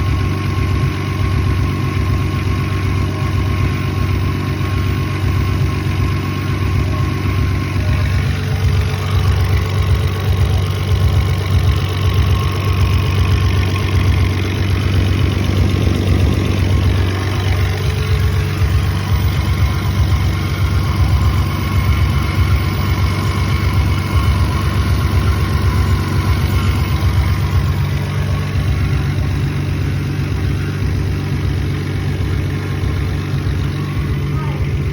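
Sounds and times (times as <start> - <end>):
car engine idling roughly: 0.0 - 34.9.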